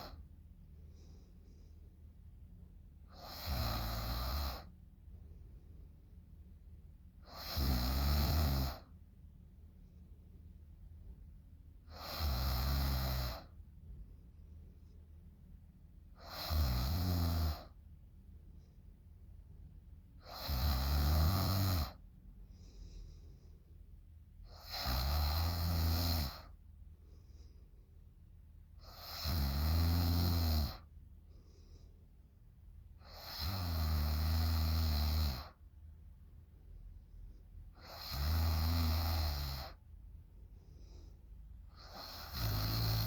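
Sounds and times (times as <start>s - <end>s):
faint breathing: 0.0s - 2.4s, 21.9s - 24.6s, 26.2s - 28.2s, 30.8s - 33.6s, 39.5s - 43.0s
woman snoring: 3.1s - 4.7s, 7.2s - 8.9s, 11.9s - 13.5s, 16.2s - 17.8s, 20.2s - 22.0s, 24.5s - 26.5s, 28.8s - 30.9s, 33.0s - 35.6s, 37.8s - 39.8s, 41.8s - 43.0s.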